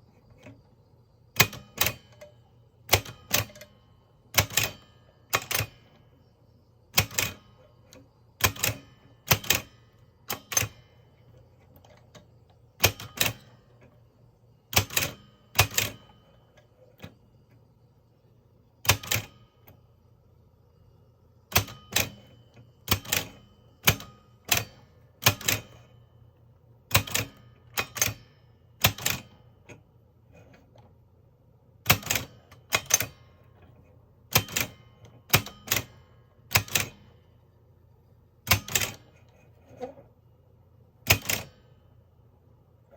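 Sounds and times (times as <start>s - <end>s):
typewriter clacks: 12.8s - 13.5s, 26.9s - 28.2s, 31.9s - 33.2s, 38.5s - 39.0s.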